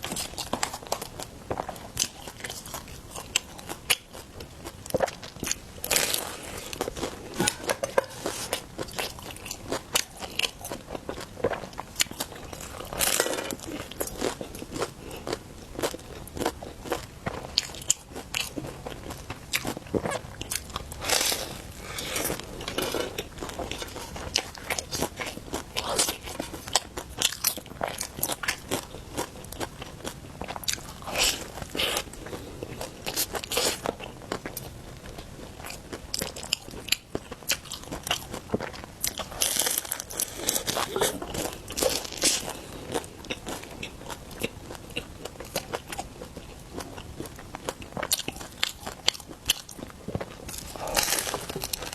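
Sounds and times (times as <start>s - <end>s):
chewing: 0.0s - 51.9s
bread crust crunching when bitten: 47.3s - 51.9s.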